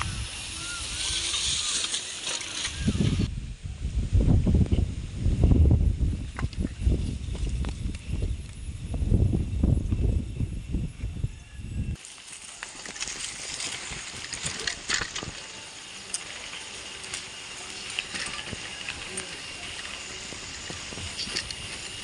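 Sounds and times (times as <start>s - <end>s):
bicycle rumbling over rough ground: 0.0s - 3.3s, 11.8s - 22.0s
tyres hissing on dirt: 0.0s - 3.3s, 11.9s - 22.0s.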